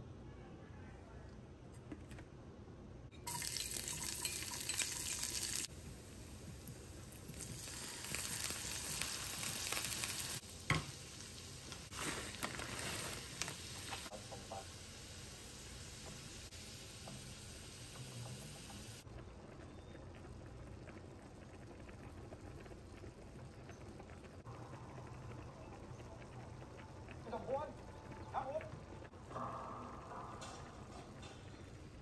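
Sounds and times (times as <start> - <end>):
utensil stirring food: 3.2 - 5.7
food sizzling in a frying pan: 3.2 - 19.1.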